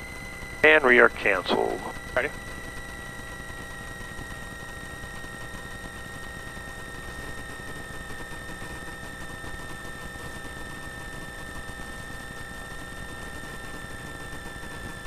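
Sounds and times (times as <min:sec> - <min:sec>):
aircraft engines droning: 0:00.6 - 0:02.3.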